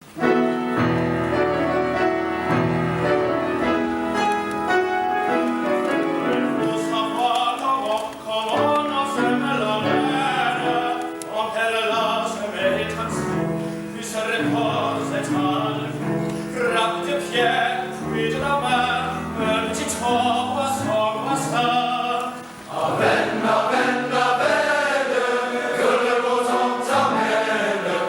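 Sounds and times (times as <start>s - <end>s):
piano accompaniment: 0.0s - 28.0s
men's chorus singing: 8.3s - 13.3s, 16.6s - 28.0s.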